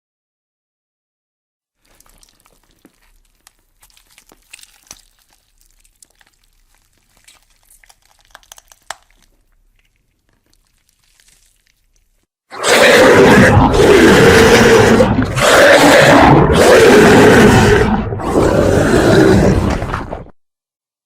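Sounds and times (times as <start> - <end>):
crackling and crunching: 1.8 - 12.3.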